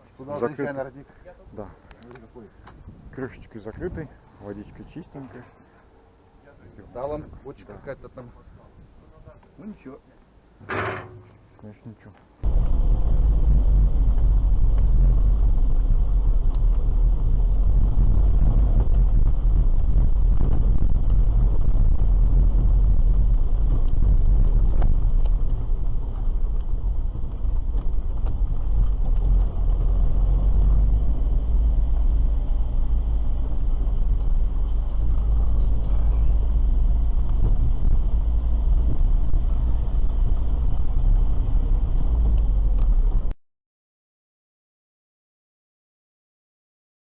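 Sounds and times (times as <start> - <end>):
car cabin road and engine rumble: 22.6 - 43.3.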